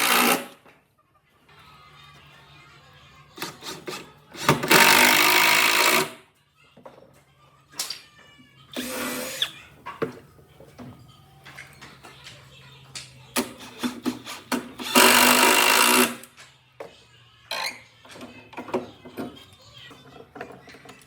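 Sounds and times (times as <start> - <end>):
handheld power tool running: 0.0 - 0.6, 3.4 - 6.2, 13.4 - 16.3.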